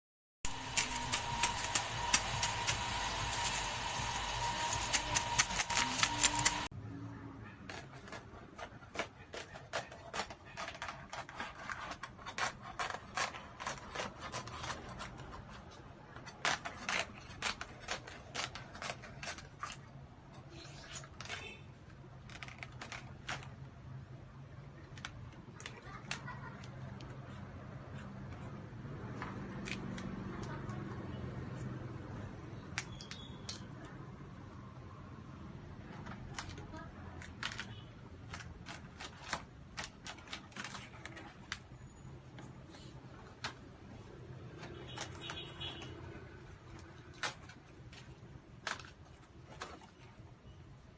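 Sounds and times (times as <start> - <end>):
roast pig skin crackling: 0.5 - 6.7.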